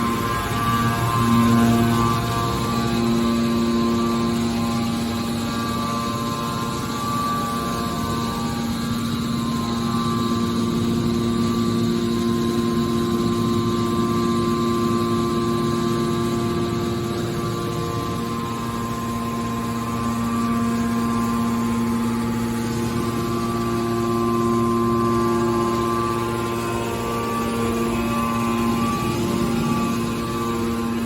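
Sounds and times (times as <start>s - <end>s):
hydraulic power unit whine: 0.0s - 31.0s.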